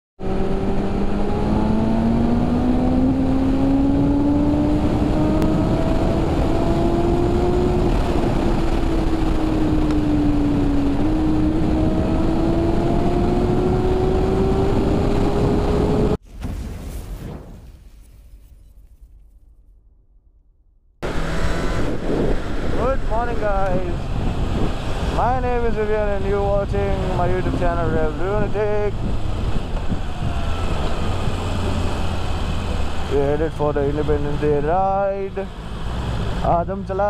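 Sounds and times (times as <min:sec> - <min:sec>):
motorcycle engine accelerating: 0:00.2 - 0:16.2, 0:21.0 - 0:36.5
wind rush: 0:00.2 - 0:18.1, 0:21.0 - 0:33.1.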